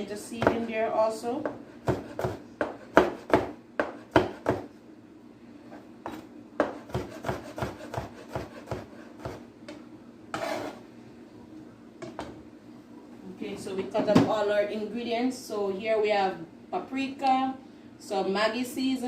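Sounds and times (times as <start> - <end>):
knife cutting vegetables on board: 1.8 - 4.6, 6.1 - 9.4, 10.4 - 10.8
knife scraping board: 6.1 - 9.4, 10.3 - 10.8.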